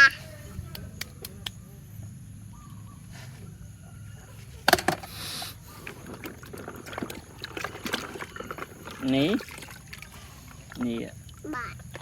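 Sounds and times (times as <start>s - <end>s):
plastic toys clicking and knocking: 4.7s - 5.1s
water splashing: 5.8s - 12.0s.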